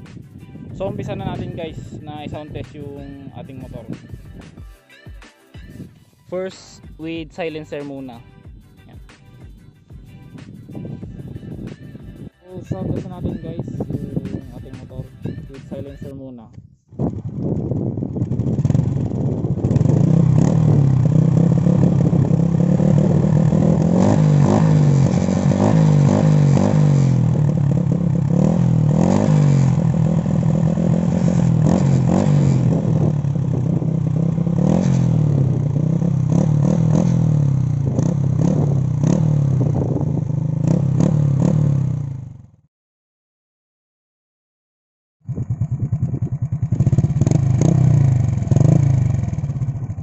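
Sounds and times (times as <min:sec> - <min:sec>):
motorcycle engine revving: 0:16.9 - 0:42.6, 0:45.2 - 0:50.0.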